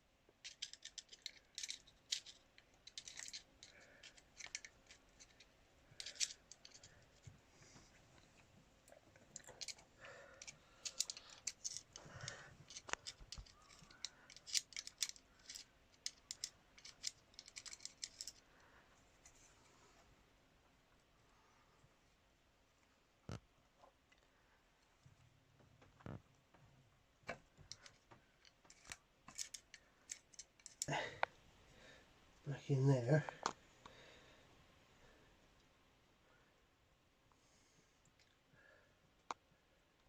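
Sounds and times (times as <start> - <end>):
small tools clicking and scraping: 0.3 - 7.3, 9.2 - 18.5, 27.3 - 31.3.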